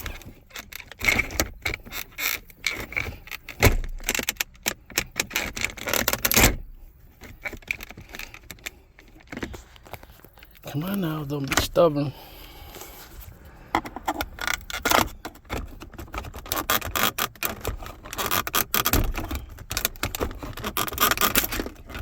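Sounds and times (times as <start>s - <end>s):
screwdriver scraping plastic: 0.0s - 6.6s, 12.9s - 22.0s
small clicks and rattles: 0.0s - 11.8s, 13.7s - 22.0s.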